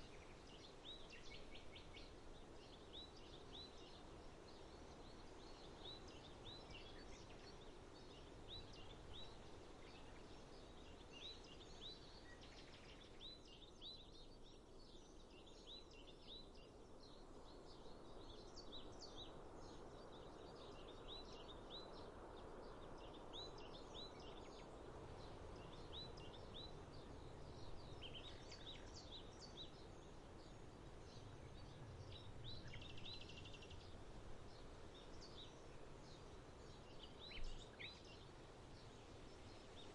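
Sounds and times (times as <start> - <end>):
small birds chirping: 0.0 - 39.9.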